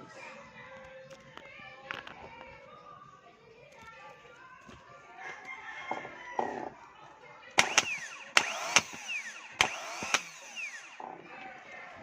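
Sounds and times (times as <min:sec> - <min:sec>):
electrical snaps: 0:07.6 - 0:10.9
starter motor whirring: 0:07.6 - 0:12.0.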